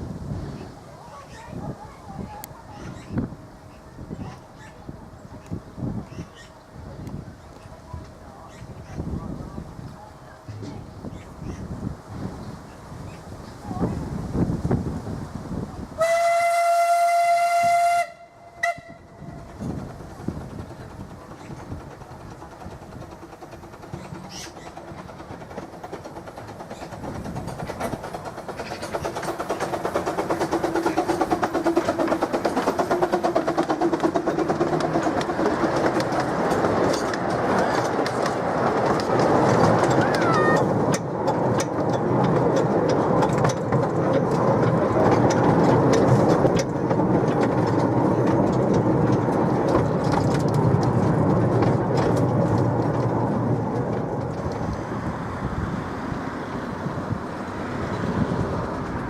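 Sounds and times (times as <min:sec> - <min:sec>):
miniature train running past: 0:13.0 - 0:59.0
wheels clicking over rail joints: 0:15.6 - 0:59.0.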